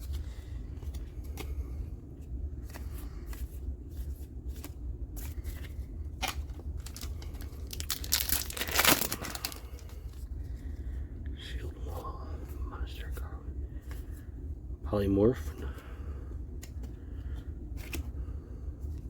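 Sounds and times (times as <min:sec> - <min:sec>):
light clicks of card handling: 0:00.0 - 0:07.5, 0:16.5 - 0:18.1
foil wrapper crinkling and tearing: 0:06.2 - 0:10.0.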